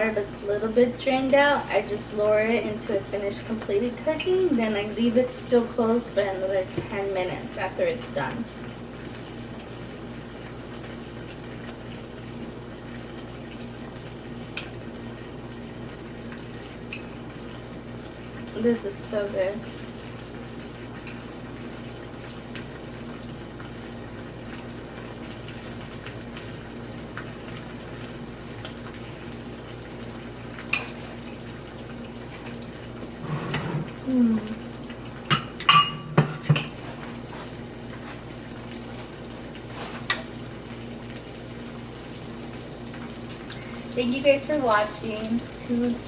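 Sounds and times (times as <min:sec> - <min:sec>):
utensil clinking on a plate: 0:35.3 - 0:36.8.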